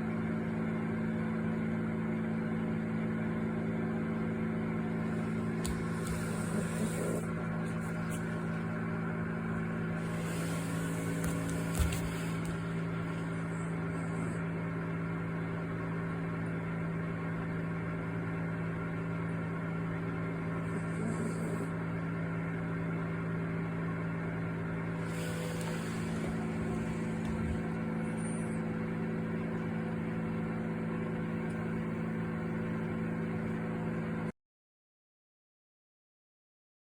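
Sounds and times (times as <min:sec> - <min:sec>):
dishwasher humming: 0:04.8 - 0:14.4, 0:24.9 - 0:33.4.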